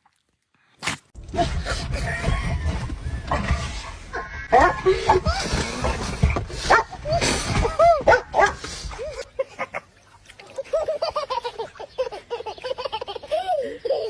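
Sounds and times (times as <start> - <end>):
dogs barking and yipping: 3.4 - 5.4, 6.6 - 7.0, 7.8 - 8.6.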